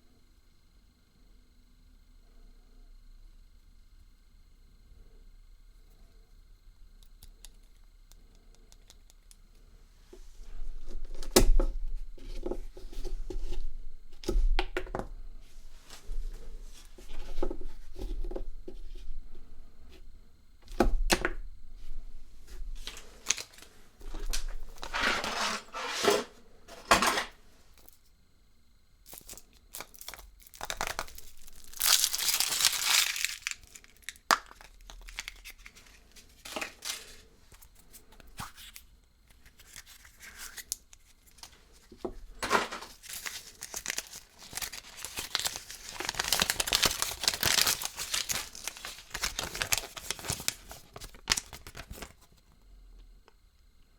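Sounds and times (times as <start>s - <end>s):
wrapping being torn and crinkled: 22.8s - 23.7s, 29.1s - 37.2s, 42.9s - 52.3s.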